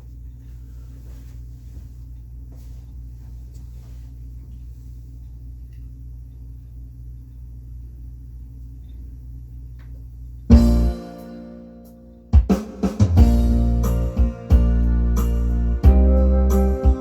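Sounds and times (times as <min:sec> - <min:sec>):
amplified instrument chord ringing: 0:10.5 - 0:12.3, 0:13.2 - 0:17.0
low hum: 0:13.2 - 0:17.0.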